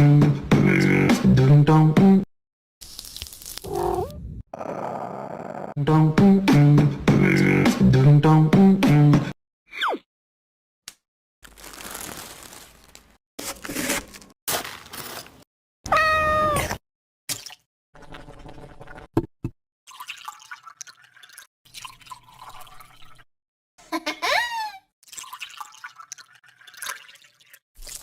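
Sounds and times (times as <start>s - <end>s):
cat meowing: 15.9s - 16.8s.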